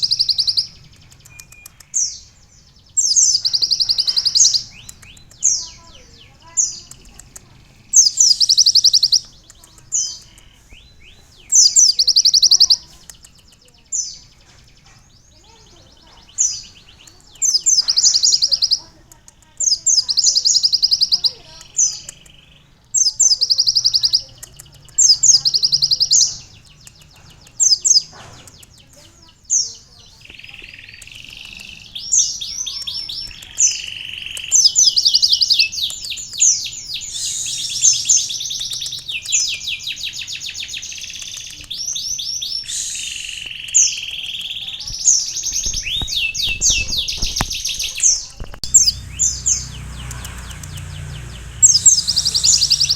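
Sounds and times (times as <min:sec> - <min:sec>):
bird trilling song: 0:00.0 - 0:52.9.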